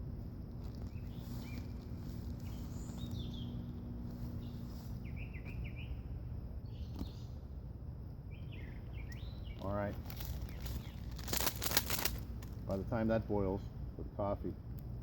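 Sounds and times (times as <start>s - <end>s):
low outdoor background noise: 0.0s - 15.0s
small birds chirping: 0.4s - 12.1s.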